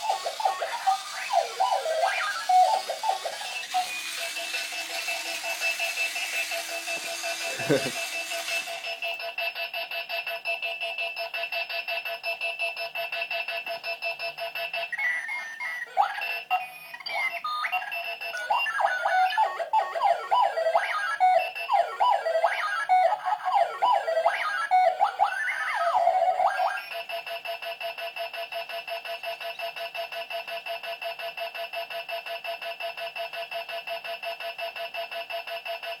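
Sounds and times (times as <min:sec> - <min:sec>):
warbling electronic chirps: 0:00.0 - 0:09.2
alarm clock pulsing beep: 0:00.0 - 0:36.0.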